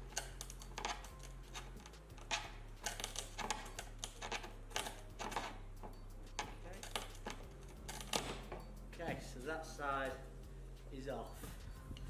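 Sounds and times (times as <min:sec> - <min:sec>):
clicks and scrapes of hand work: 0:00.0 - 0:08.7.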